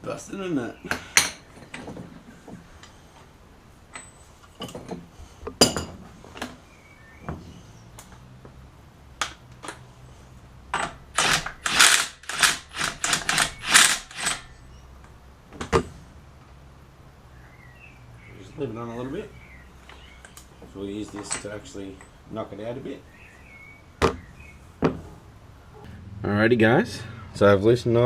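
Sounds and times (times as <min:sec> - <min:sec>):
ratchet rattling: 0:10.8 - 0:14.6.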